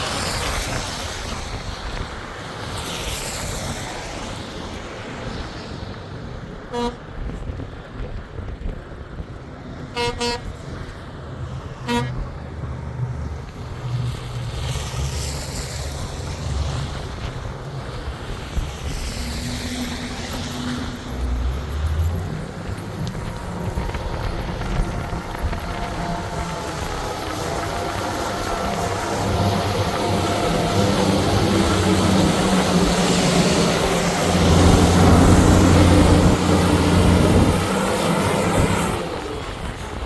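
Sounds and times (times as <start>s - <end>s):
vehicle and road noise: 0.0s - 40.0s
vehicle horn beeps: 6.7s - 7.0s, 9.9s - 10.5s, 11.8s - 12.2s
low engine rumble: 10.6s - 40.0s.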